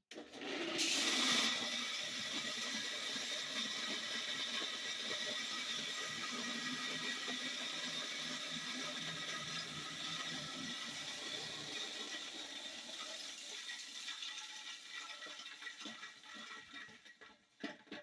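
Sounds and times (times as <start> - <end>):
electric grain grinder running: 0.4 - 13.5.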